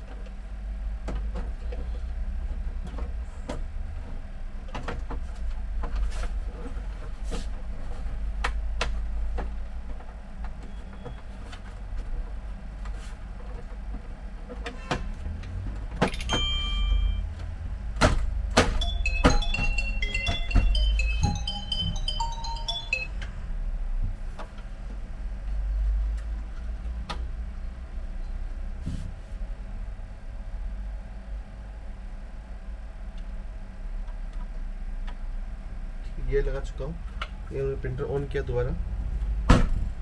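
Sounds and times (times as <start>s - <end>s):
short steady tone: 16.1s - 17.3s
music: 18.7s - 23.1s.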